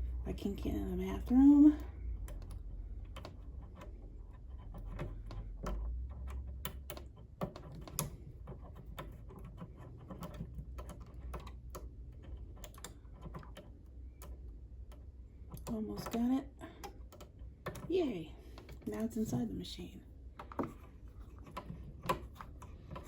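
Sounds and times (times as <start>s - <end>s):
light clicks and taps of a tool: 2.2s - 17.9s.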